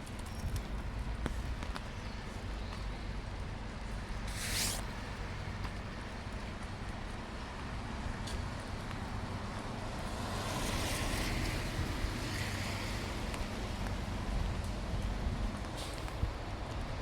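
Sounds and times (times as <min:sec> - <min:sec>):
rain hiss: 0:04.3 - 0:04.9.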